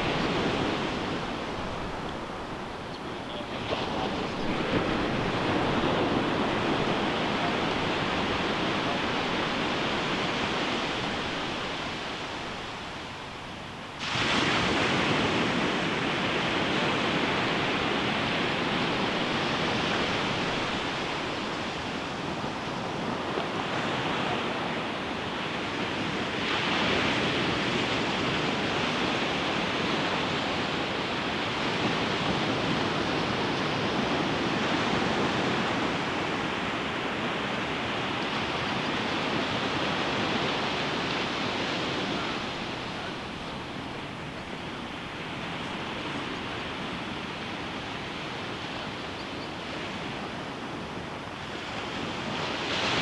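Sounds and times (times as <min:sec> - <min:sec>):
ocean surf washing on beach: 0:00.0 - 0:53.0.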